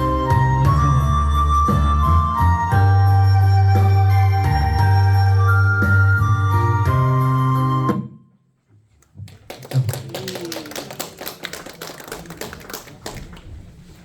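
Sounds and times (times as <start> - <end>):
music: 0.0 - 8.5.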